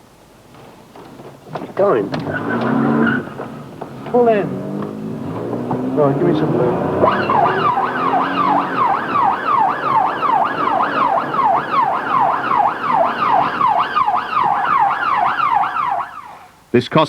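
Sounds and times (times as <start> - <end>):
police siren yelp: 1.9 - 16.6.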